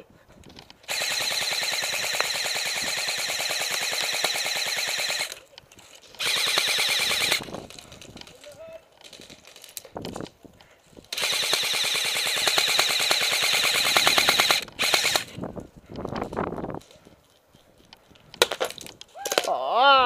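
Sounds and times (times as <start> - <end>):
airsoft gun firing bursts: 0.8 - 5.4, 6.2 - 7.5, 11.1 - 15.4.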